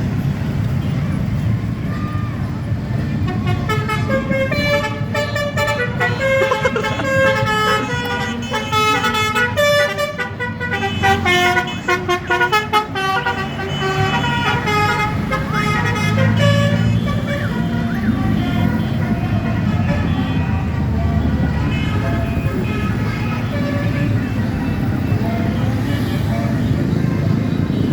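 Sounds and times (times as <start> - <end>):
bus engine rumbling: 0.0 - 27.9
musical air horn tune: 3.3 - 17.6.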